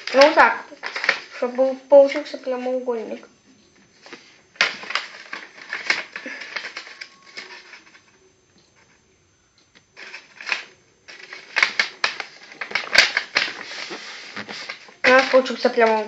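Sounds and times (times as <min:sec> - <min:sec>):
paper rustling and crinkling: 0:00.0 - 0:01.6, 0:04.0 - 0:08.1, 0:10.0 - 0:16.0.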